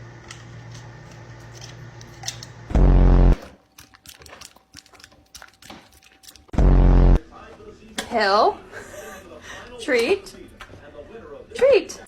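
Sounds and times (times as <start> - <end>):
pet chewing a treat: 3.5 - 6.5.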